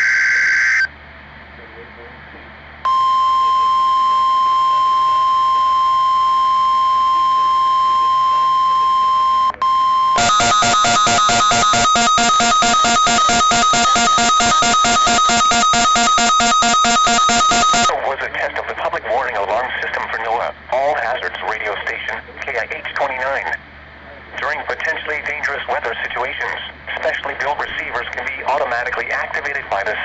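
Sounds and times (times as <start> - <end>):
rapid pulsing alarm beeps: 2.9 - 17.9
steady alarm tone: 2.9 - 17.9.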